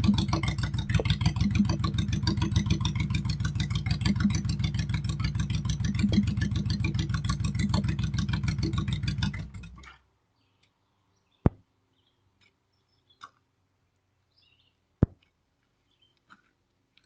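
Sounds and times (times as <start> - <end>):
small engine running: 0.0 - 10.0.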